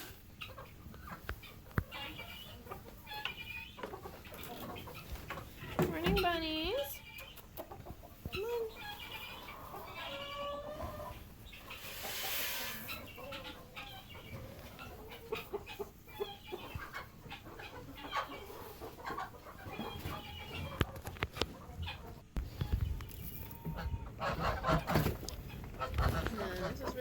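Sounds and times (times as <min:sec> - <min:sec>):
chickens clucking: 0:00.0 - 0:27.0
rustle: 0:11.5 - 0:14.9.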